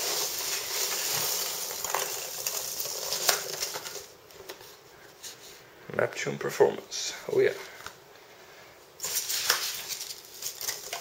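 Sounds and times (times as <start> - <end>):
packaging foam rustling: 0.0 - 5.4, 9.0 - 11.0.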